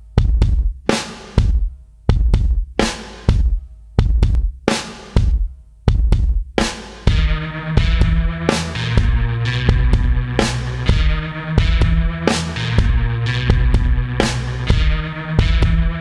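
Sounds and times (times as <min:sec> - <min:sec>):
drum beat with kick and snare: 0:00.0 - 0:16.0
sustained bass: 0:07.1 - 0:16.0.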